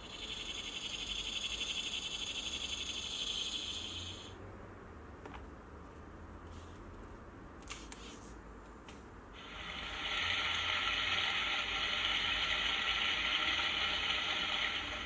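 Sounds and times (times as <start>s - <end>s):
mechanical ratcheting whirring: 0.0s - 4.3s, 9.4s - 15.0s.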